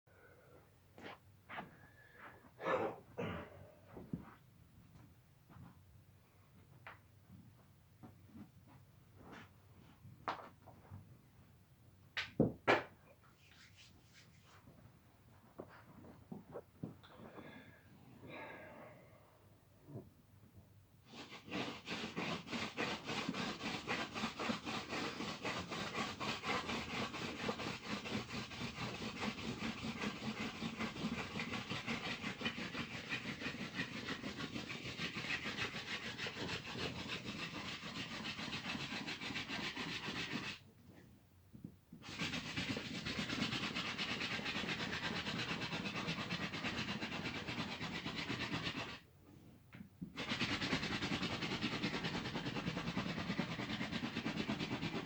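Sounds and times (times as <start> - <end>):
hand drill rubbing on wood: 21.1 - 40.6, 42.0 - 49.0, 50.2 - 55.0.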